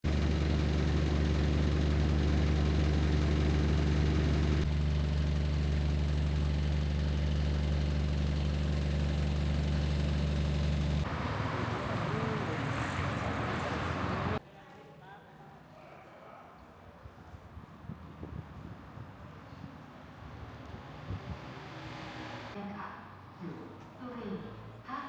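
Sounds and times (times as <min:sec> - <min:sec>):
diesel locomotive idling: 0:00.0 - 0:14.4.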